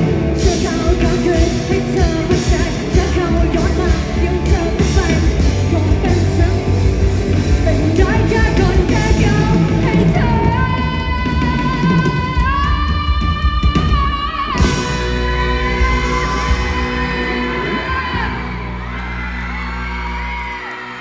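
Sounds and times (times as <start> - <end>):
person singing: 0.0 - 20.8
bass guitar: 0.0 - 21.0
drums: 0.0 - 21.0
electric guitars: 0.0 - 21.0.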